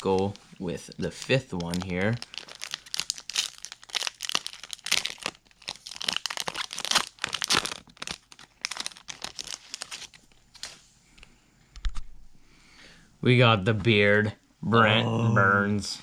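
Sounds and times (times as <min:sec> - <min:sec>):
card pack wrapper crinkling: 0:00.0 - 0:10.8.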